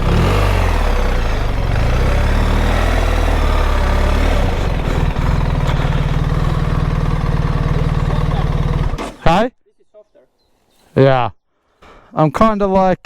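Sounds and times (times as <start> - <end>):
motorcycle engine running: 0.0 - 9.2.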